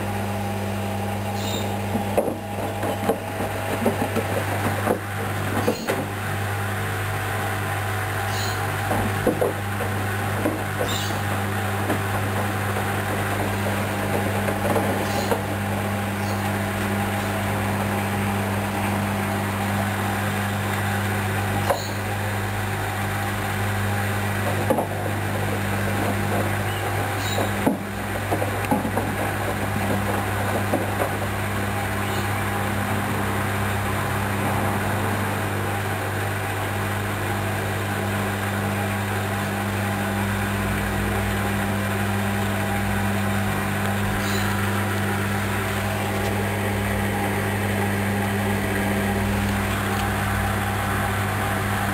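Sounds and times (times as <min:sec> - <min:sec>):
washing machine motor hum: 0:00.0 - 0:51.9
drum clicks and knocks: 0:02.0 - 0:06.1, 0:24.4 - 0:31.4.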